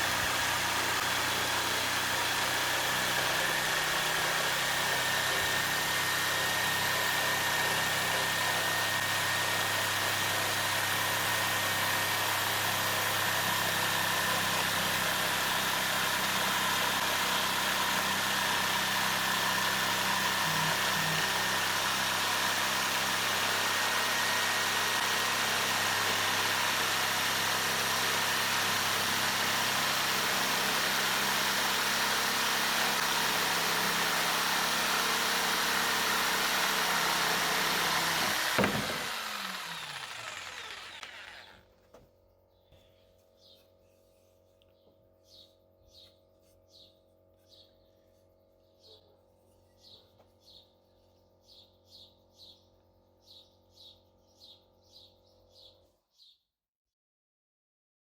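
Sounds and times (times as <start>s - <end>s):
electric jigsaw running: 0.0s - 41.7s.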